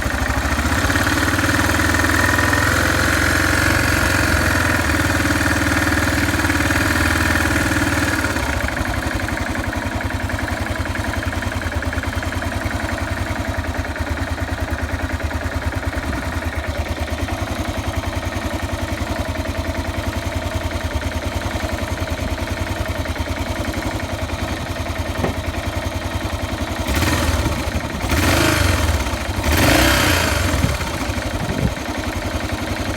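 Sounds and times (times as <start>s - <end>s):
single-cylinder engine idling: 0.0s - 32.9s
engine throttle blips: 26.8s - 31.9s.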